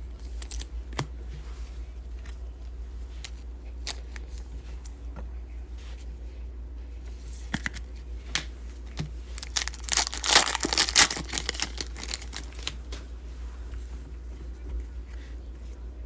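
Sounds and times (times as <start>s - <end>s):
steady low hum: 0.0s - 16.0s
wrapper tearing and crinkling: 0.2s - 0.7s, 9.4s - 12.9s.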